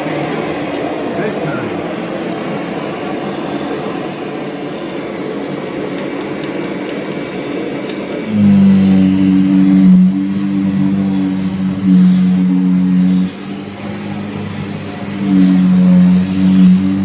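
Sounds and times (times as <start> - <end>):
low hum with held tones: 0.0 - 17.0
vacuum cleaner running: 0.0 - 17.0.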